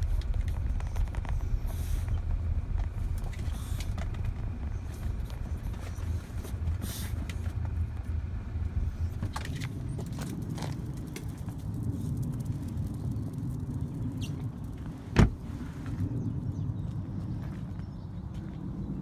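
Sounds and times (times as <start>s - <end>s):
car road and engine rumble: 0.0s - 19.0s
small clicks and rattles: 9.1s - 15.0s.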